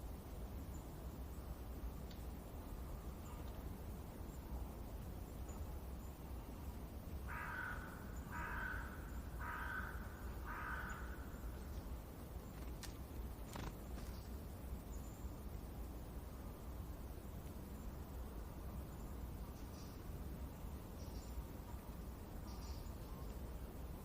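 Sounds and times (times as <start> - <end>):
low forest ambience rumble: 0.0 - 24.0
crow cawing: 7.3 - 11.4.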